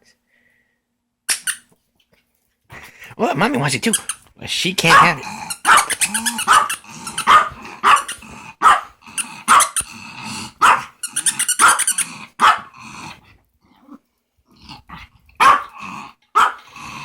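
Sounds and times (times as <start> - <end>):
dog barking: 4.8 - 9.8, 10.6 - 11.0, 11.6 - 12.8, 15.4 - 16.7.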